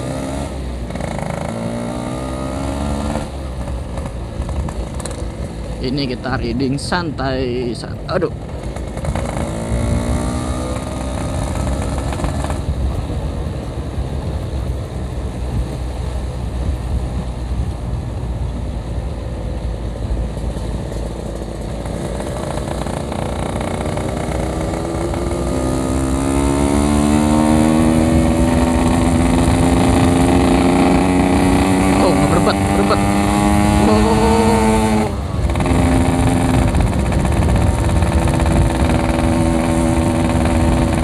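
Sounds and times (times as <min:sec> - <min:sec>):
motorcycle engine running: 0:00.0 - 0:41.0
wind rumble on microphone: 0:08.3 - 0:25.5, 0:33.1 - 0:41.0.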